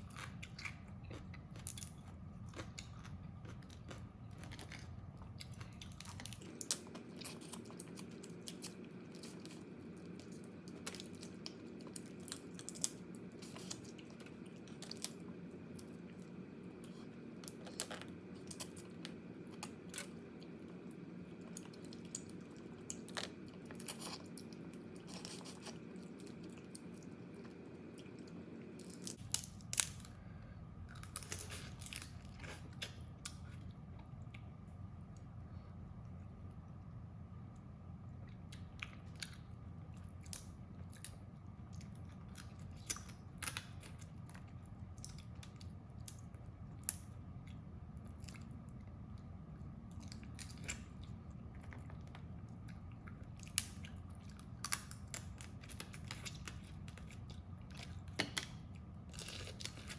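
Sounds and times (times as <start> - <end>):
chewing: 0.0 - 29.2, 49.9 - 59.9
low background hum: 0.0 - 59.9
crab shells cracking between teeth: 53.4 - 57.3.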